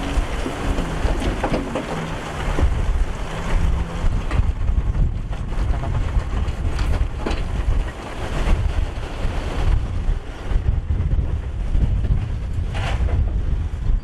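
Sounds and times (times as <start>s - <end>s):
metallic clanks and knocks: 0.0s - 2.7s
diesel machinery rumbling: 0.0s - 13.8s
wind buffeting microphone: 0.0s - 14.0s.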